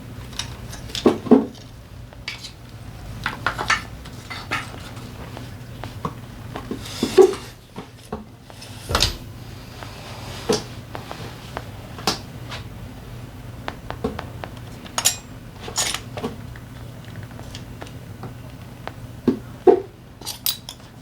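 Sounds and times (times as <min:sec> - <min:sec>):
steady low hum: 0:00.0 - 0:21.0
metal tools clinking and knocking: 0:15.0 - 0:16.1, 0:20.2 - 0:20.9.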